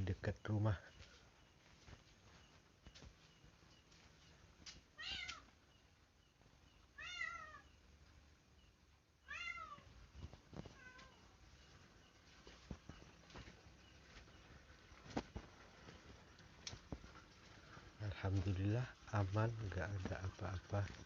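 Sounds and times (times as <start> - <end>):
cat meowing: 5.0 - 5.5, 7.0 - 7.7, 9.3 - 9.9.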